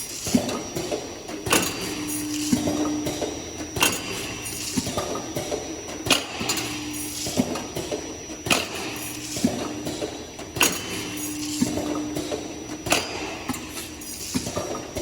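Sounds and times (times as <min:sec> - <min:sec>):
vibratory feeders humming: 0:00.0 - 0:15.0.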